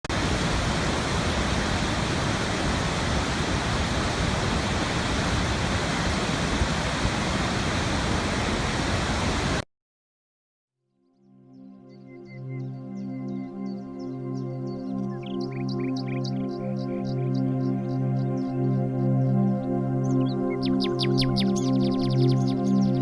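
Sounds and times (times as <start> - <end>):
loud steady rushing noise: 0.1 - 9.6.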